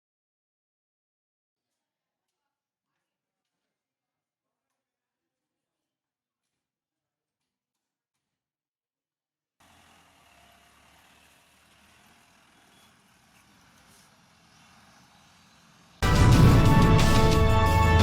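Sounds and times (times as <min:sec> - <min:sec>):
loud music: 0:16.0 - 0:18.0
low hum: 0:16.0 - 0:18.0.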